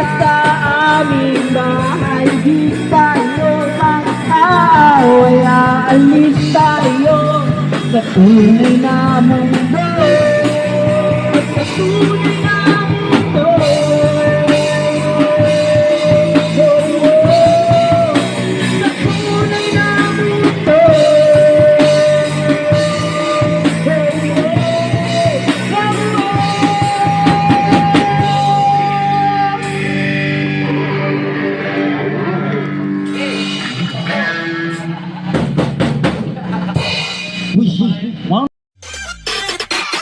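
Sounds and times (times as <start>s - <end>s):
person singing: 0.0s - 30.0s
rock band playing live: 0.0s - 40.0s.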